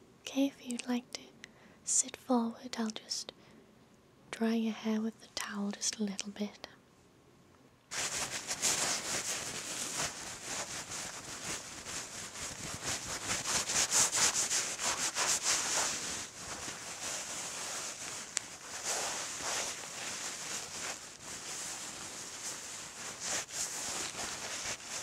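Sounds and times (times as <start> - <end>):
towel rubbing wet hair: 7.9 - 25.0.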